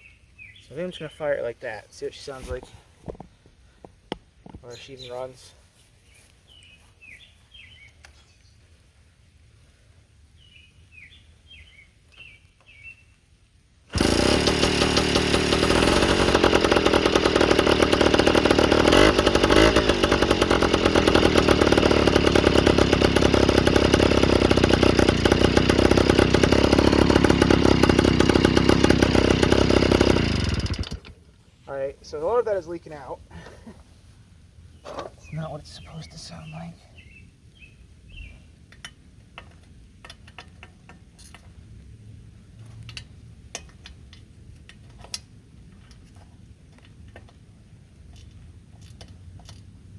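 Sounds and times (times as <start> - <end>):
birds chirping: 0.0 - 2.4, 4.6 - 5.5, 34.6 - 38.5
moped two-stroke engine running: 13.9 - 31.2.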